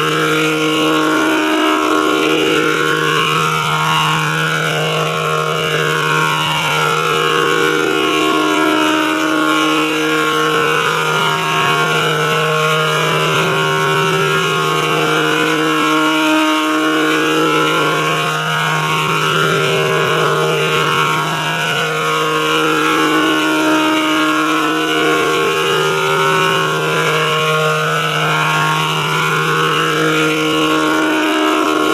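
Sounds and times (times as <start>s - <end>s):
electronic drone: 0.0s - 31.9s.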